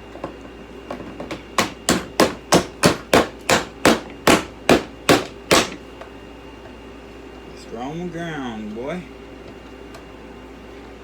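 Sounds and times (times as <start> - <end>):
hammer strikes: 1.6 - 5.8.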